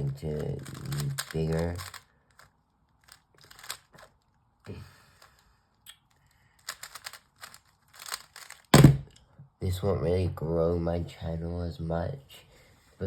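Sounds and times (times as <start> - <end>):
puzzle cube plastic clicking: 0.0 - 4.3, 5.2 - 9.2.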